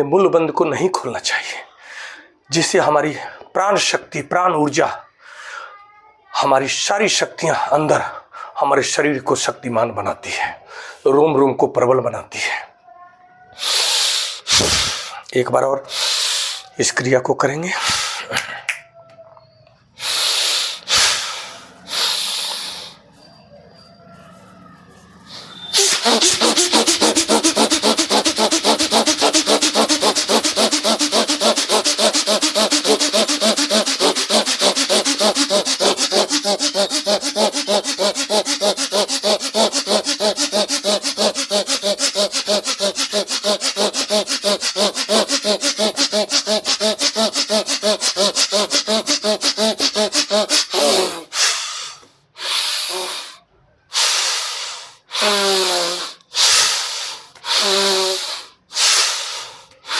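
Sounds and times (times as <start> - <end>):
slow deep breaths: 1.8 - 2.4, 5.2 - 5.7, 10.6 - 11.1, 15.9 - 16.8, 20.0 - 23.1, 50.6 - 55.4
rapid forceful rhythmic breathing: 13.6 - 15.3, 15.9 - 16.8, 20.0 - 23.1, 25.3 - 59.9.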